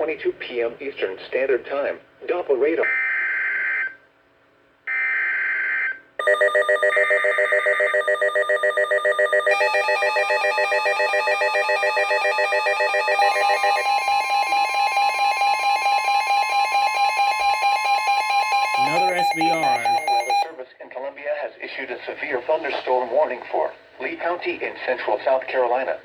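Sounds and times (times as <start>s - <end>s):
fast warbling alarm beep: 6.2s - 20.5s
screeching digital data burst: 18.5s - 20.4s
steady alert tone: 18.5s - 20.5s.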